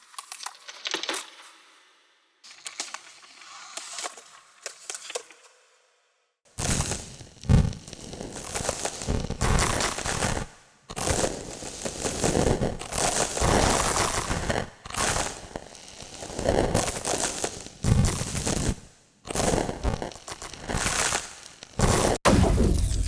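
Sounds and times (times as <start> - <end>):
dense crackling crumpling texture: 6.5 - 22.2
heavy impacts and rumble: 22.3 - 23.0.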